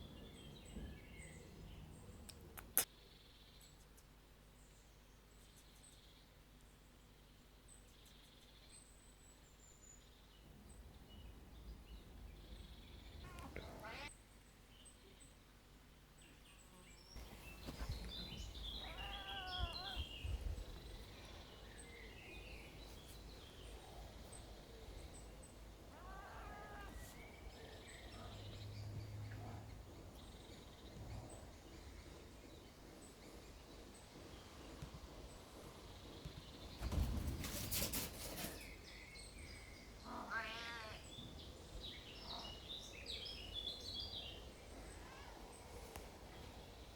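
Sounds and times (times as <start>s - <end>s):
faint high bird chirps: 12.6s - 14.2s, 16.7s - 29.5s
animal calls: 13.2s - 14.1s, 17.7s - 20.1s, 25.9s - 27.3s.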